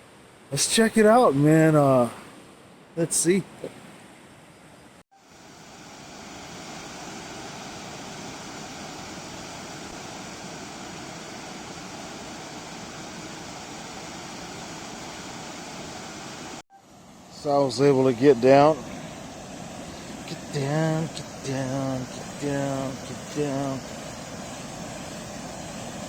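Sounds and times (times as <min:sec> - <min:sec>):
waterfall rushing: 0:17.4 - 0:26.0.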